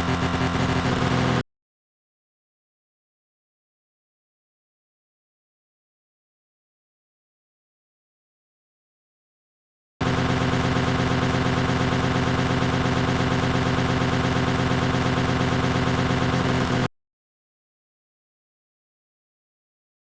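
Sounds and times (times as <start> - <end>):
machine running with fast pulse: 0.0 - 1.4, 10.0 - 16.9.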